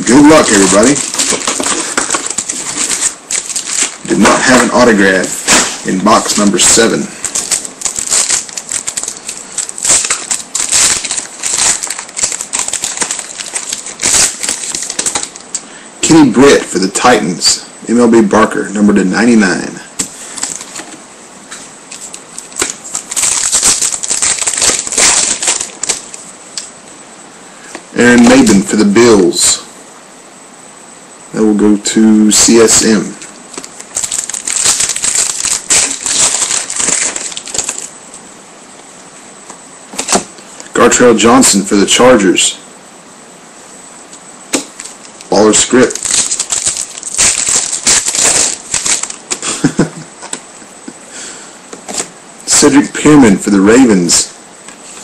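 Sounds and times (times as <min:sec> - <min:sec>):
card pack wrappers crinkling: 0:00.0 - 0:16.6, 0:20.0 - 0:26.7, 0:32.4 - 0:38.0, 0:39.9 - 0:40.4, 0:44.5 - 0:50.5.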